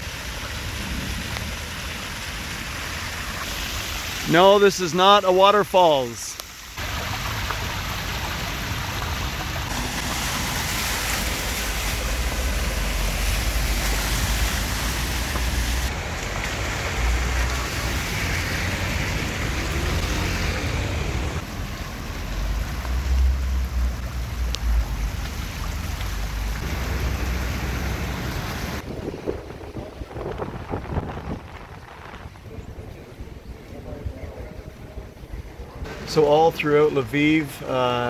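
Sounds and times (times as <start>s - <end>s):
heavy rain: 0.0s - 33.4s
floodwater rushing: 0.0s - 38.0s
wind buffeting microphone: 28.7s - 35.9s.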